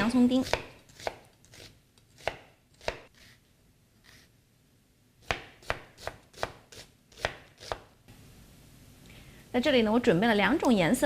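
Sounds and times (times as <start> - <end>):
knife chopping onion: 0.0 - 3.3, 5.2 - 7.9.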